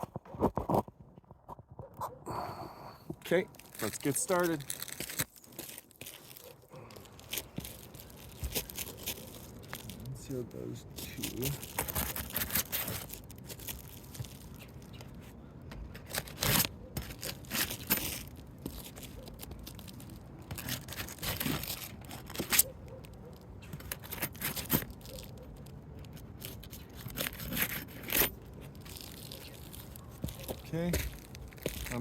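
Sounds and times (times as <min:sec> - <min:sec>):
roof shingles scraping and tearing: 0:03.5 - 0:10.3, 0:11.0 - 0:14.5, 0:15.9 - 0:22.6, 0:23.8 - 0:32.0.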